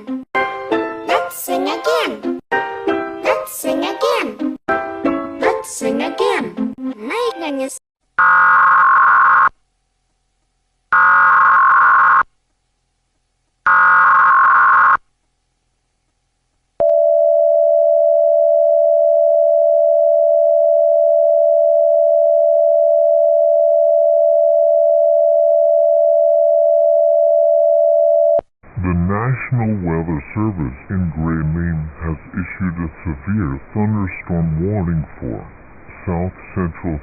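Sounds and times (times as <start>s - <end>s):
long steady attention tone: 16.8s - 37.0s.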